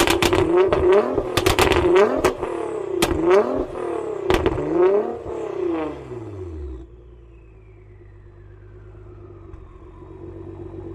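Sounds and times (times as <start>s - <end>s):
car engine revving and idling: 0.0s - 10.9s
faint falling whine: 5.9s - 10.9s.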